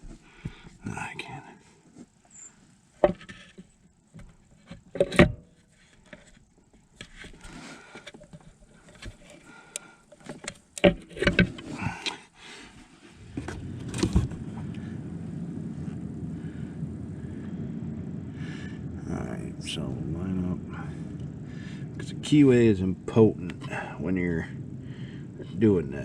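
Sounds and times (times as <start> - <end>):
steady low rumble: 11.8 - 26.0.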